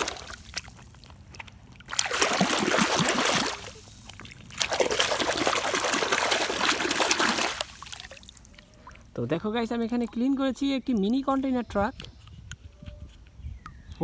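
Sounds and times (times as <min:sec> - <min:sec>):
running water splashing: 0:00.0 - 0:11.1.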